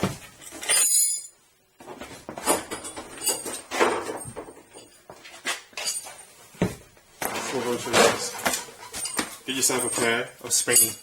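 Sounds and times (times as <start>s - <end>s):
metal tools clinking: 0.4s - 1.4s, 2.4s - 6.4s, 7.3s - 11.0s.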